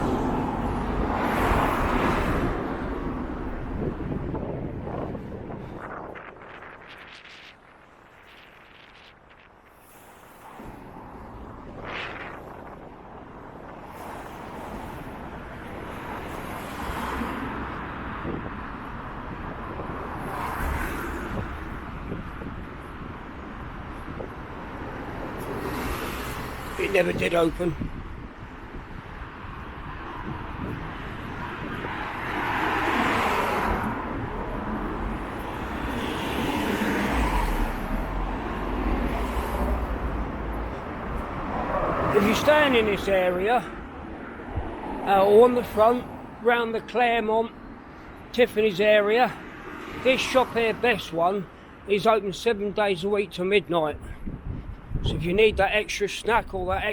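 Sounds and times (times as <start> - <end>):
wind rumbling on microphone: 0.0 - 46.4, 54.0 - 56.9
cars passing: 0.0 - 56.9
road traffic: 0.0 - 56.9.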